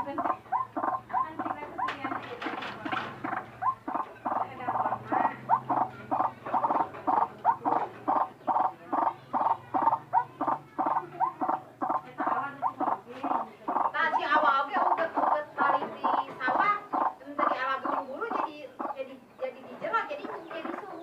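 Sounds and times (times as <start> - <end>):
waterhen calling: 0.0 - 19.2.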